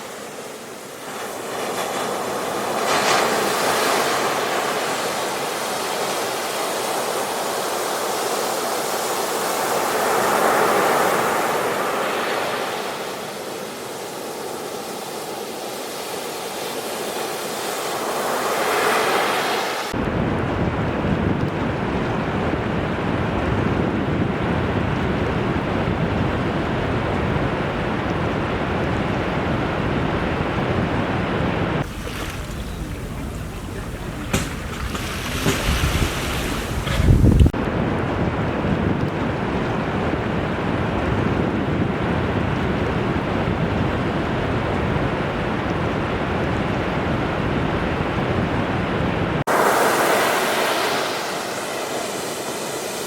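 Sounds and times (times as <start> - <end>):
ocean waves surging: 0.0 - 20.0, 31.6 - 37.6, 49.3 - 53.0
heavy sea rushing with low rumble: 0.0 - 53.0
wind on microphone: 20.0 - 53.0.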